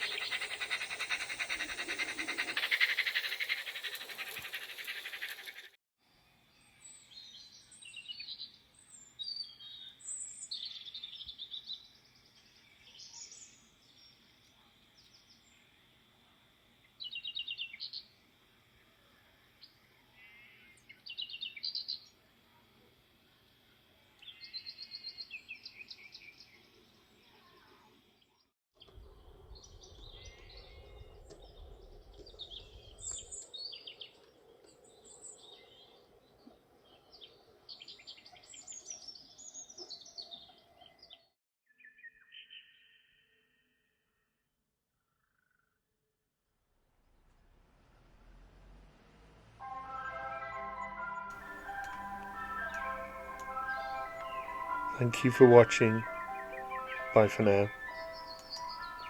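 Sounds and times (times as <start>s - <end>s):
birds chirping and trilling: 0.0s - 5.7s, 51.4s - 59.0s
faint high whine: 51.4s - 59.0s.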